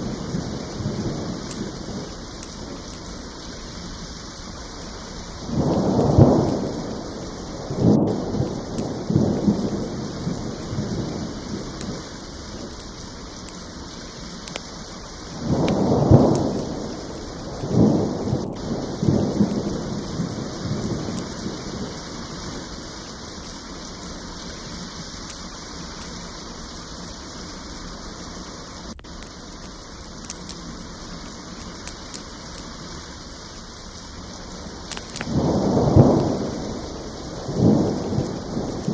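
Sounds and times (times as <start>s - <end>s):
steady rain: 0.0s - 38.9s
thunder rolling: 5.4s - 12.8s, 15.3s - 22.8s, 34.7s - 38.9s.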